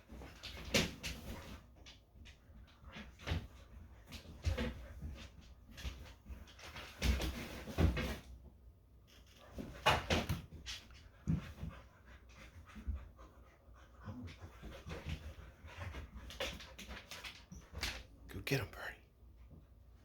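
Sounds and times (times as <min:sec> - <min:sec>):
dogs panting: 0:10.7 - 0:18.2.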